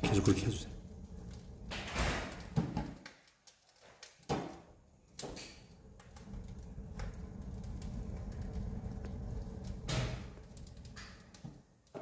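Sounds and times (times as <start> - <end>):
low rumble: 0.0 - 2.4, 5.7 - 11.3
fireplace door clunking and scraping: 1.4 - 3.1.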